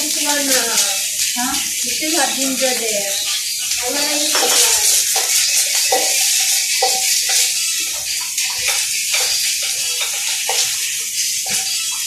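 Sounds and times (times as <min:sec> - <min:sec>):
garlic sizzling in oil: 0:00.0 - 0:12.0
spatula scraping a pan: 0:03.2 - 0:12.0.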